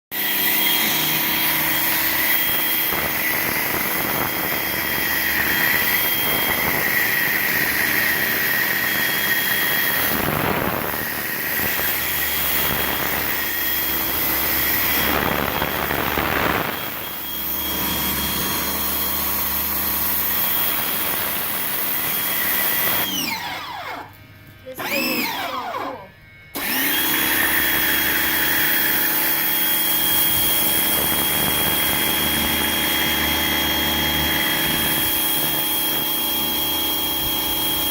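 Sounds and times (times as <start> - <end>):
pressure washer running: 0.1 - 37.9.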